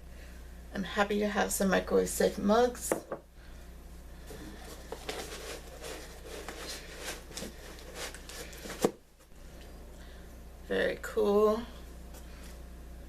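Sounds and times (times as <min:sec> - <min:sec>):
packing material rustling: 0:04.6 - 0:09.0.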